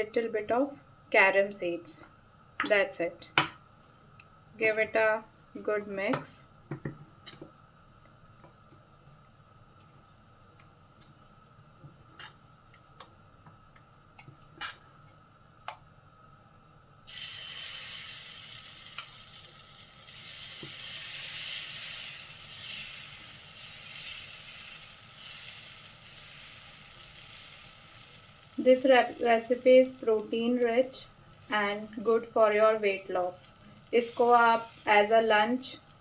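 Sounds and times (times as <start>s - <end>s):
batter sizzling on a hot pan: 17.1s - 36.0s.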